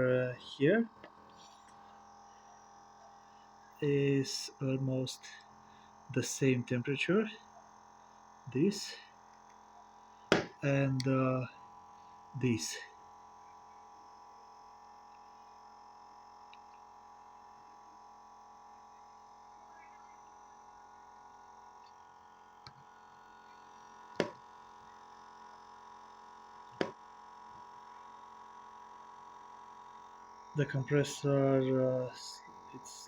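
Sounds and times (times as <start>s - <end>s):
electric pump humming: 0.0s - 33.0s.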